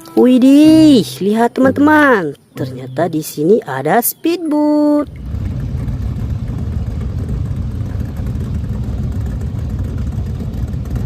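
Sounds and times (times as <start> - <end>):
speedboat engine running: 5.1 - 11.0.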